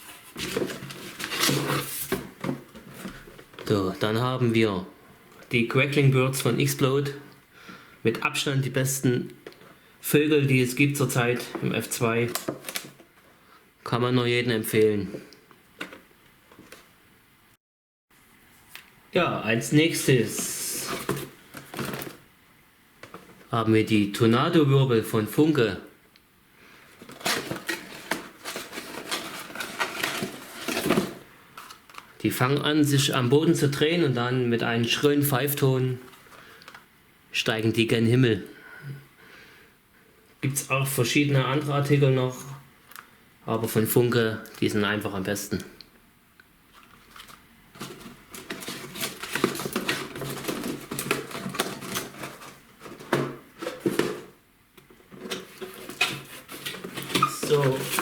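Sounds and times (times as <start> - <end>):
package rustling: 0.0 - 3.8, 20.2 - 22.2, 26.9 - 32.2, 46.7 - 58.0.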